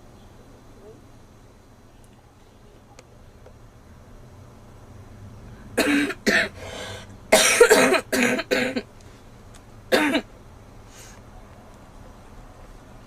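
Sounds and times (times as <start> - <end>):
girl coughing: 5.8 - 6.6, 7.3 - 8.8, 9.9 - 10.3
girl breathing in: 6.6 - 7.1.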